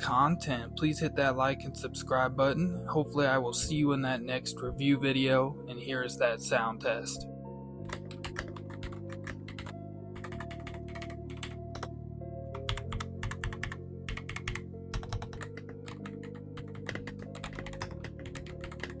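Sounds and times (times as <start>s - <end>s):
background music: 0.0s - 19.0s
mechanical keyboard typing: 7.9s - 11.9s, 12.5s - 19.0s.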